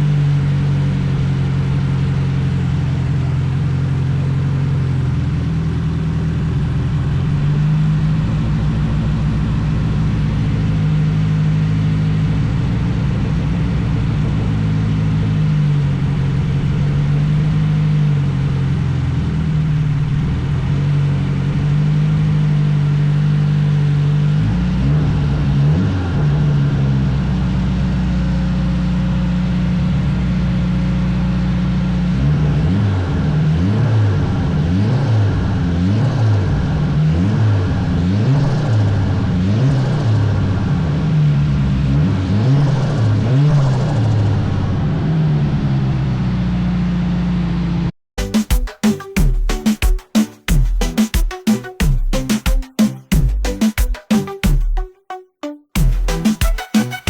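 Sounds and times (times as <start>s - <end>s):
car engine revving: 29.0s - 46.4s.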